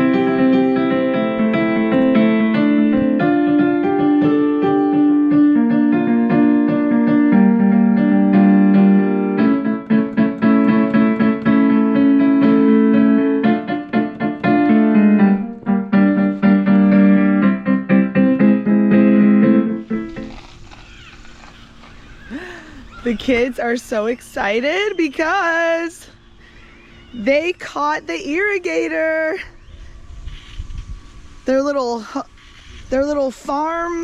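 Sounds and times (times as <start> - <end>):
piano music: 0.0 - 20.9.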